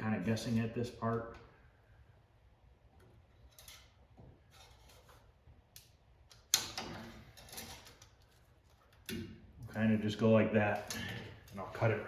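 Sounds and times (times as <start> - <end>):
metal parts being handled: 3.2 - 9.8.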